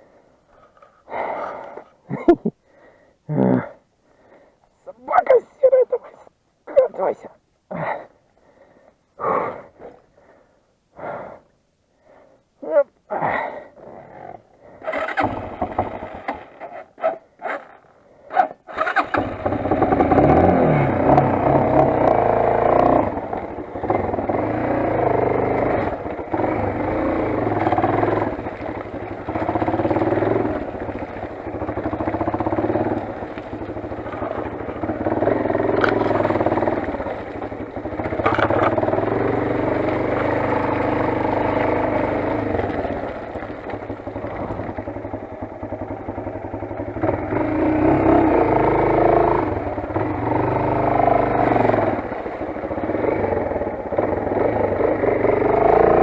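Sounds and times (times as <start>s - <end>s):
dirt bike engine running: 14.8s - 17.8s, 18.6s - 56.0s.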